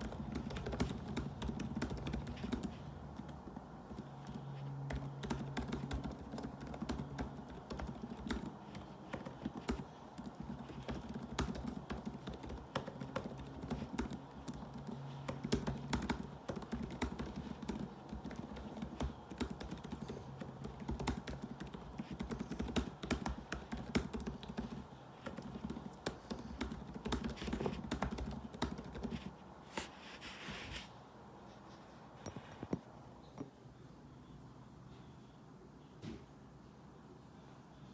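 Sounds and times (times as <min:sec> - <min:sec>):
laptop keyboard typing: 0:00.0 - 0:29.4.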